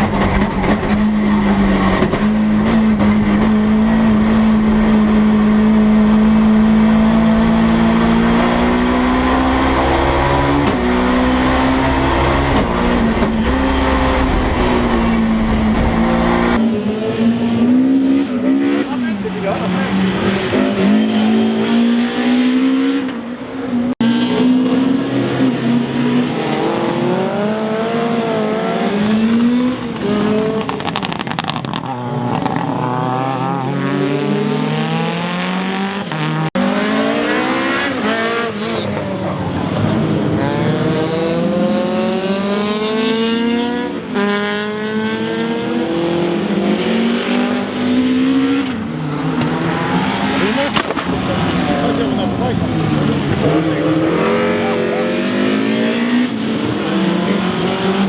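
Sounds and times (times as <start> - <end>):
rally car engine revving: 0.0 - 58.0.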